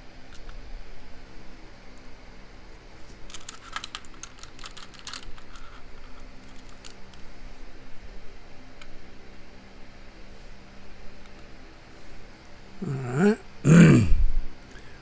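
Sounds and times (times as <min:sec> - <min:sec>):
metal tools clicking on lock parts: 0:03.3 - 0:05.6.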